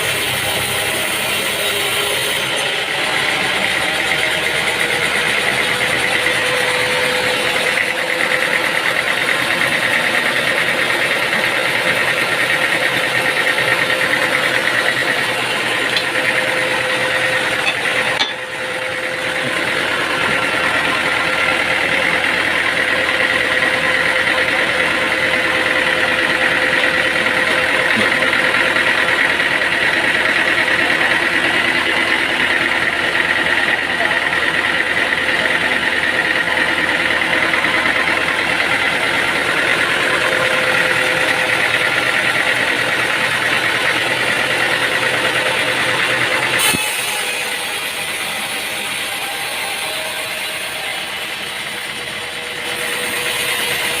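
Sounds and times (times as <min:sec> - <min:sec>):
sawmill machinery whine: 0:00.0 - 0:54.0.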